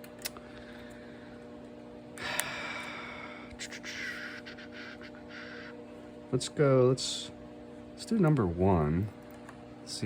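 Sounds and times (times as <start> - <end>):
steady electrical hum: 0.0 - 10.0
person breathing out heavily: 2.2 - 5.8.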